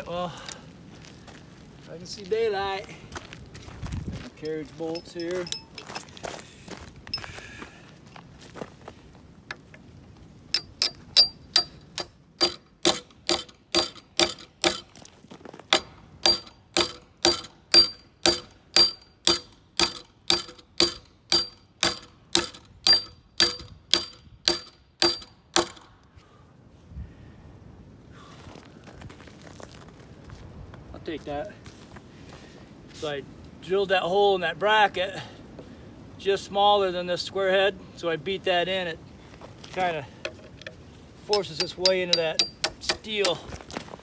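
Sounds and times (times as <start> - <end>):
hammer blows on metal: 10.6 - 14.9, 15.7 - 25.9, 41.4 - 43.5.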